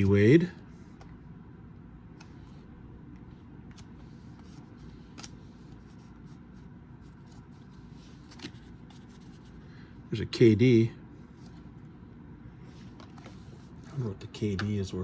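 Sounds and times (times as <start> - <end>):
low room hum: 0.0 - 15.0
cards sliding and clicking: 3.7 - 6.2, 7.1 - 9.6.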